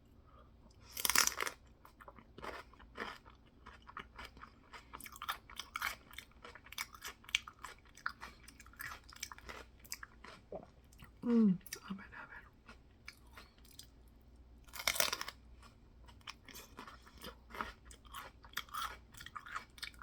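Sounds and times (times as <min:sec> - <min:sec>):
person chewing with crunches: 0:00.8 - 0:11.8, 0:12.5 - 0:20.0
crunching bite: 0:00.9 - 0:01.6, 0:14.7 - 0:15.4.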